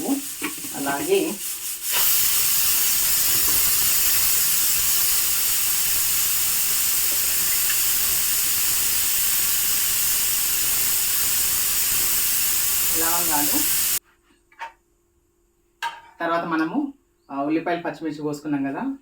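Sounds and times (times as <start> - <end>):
spices sizzling in hot oil: 0.0 - 14.0.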